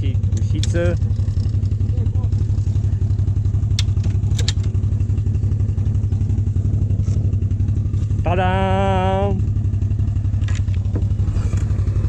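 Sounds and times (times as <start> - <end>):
atv engine idling: 0.0 - 12.0
sharp clicks: 0.3 - 0.9, 3.6 - 4.8.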